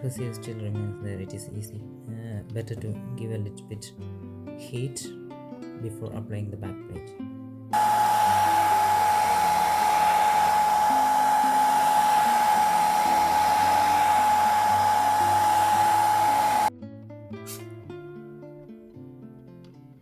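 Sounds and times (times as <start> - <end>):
hot-air blower rushing hiss: 7.8 - 16.7.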